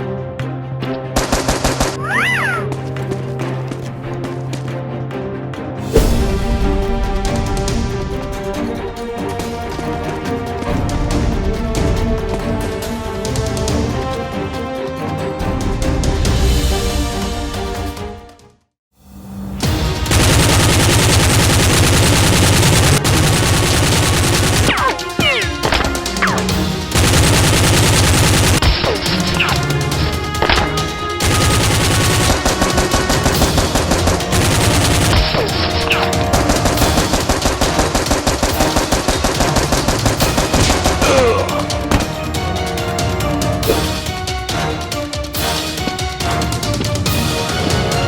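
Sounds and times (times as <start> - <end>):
action music: 0.0 - 18.5, 19.4 - 48.0
automatic gunfire: 1.2 - 2.0, 20.1 - 25.8, 26.9 - 29.6, 30.4 - 42.0.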